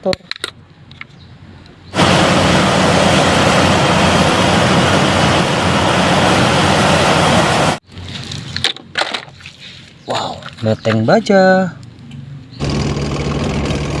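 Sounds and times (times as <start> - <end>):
steady engine rumble: 1.2 - 8.6, 11.6 - 14.0
hiss: 2.0 - 7.8.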